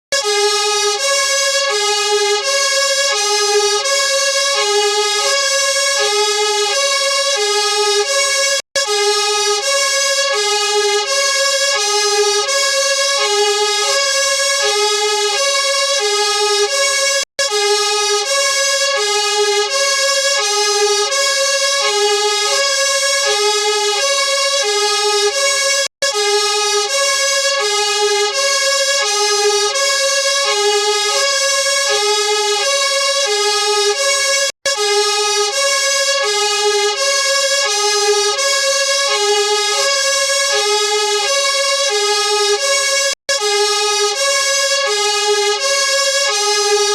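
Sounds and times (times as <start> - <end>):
two-tone fire engine siren: 0.1 - 46.9.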